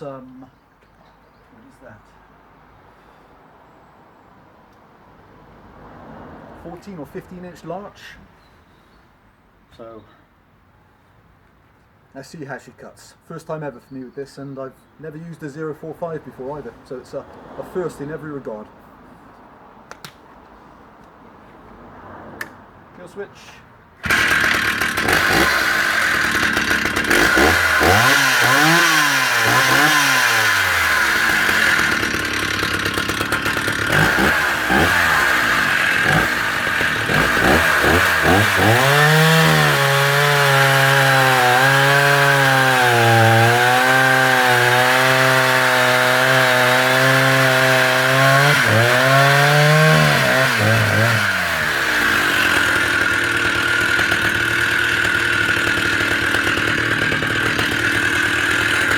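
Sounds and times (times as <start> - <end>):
chainsaw revving and cutting log: 24.0 - 58.9.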